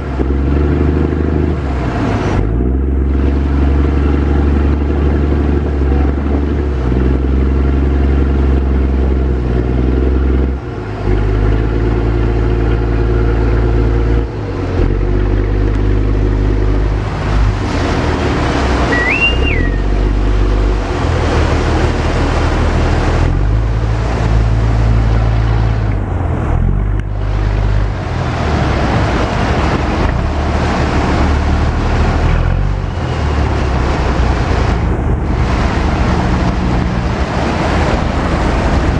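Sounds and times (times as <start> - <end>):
rush of water and wind: 0.0 - 38.9
speedboat motor running: 0.0 - 38.9
high whistle-like tone: 18.9 - 20.3.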